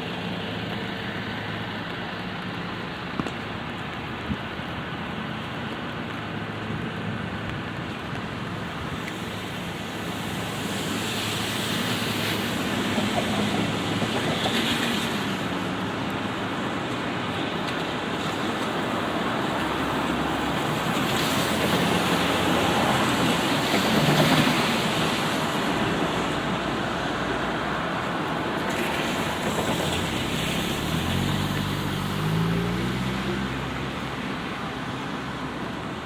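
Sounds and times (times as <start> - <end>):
light rain on street: 0.0 - 36.0
tyres hissing on wet road: 0.0 - 36.0
vehicle engine pulling away: 30.0 - 33.7.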